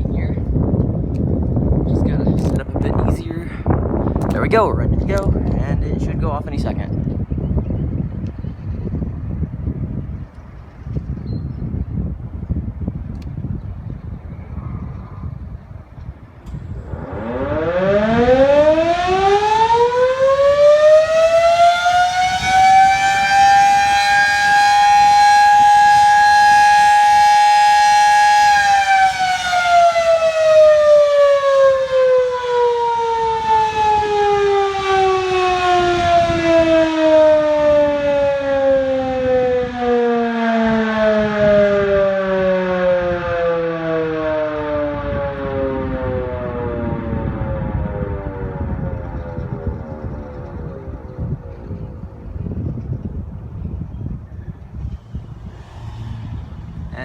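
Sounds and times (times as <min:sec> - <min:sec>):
air raid siren wailing: 0:12.2 - 0:57.0.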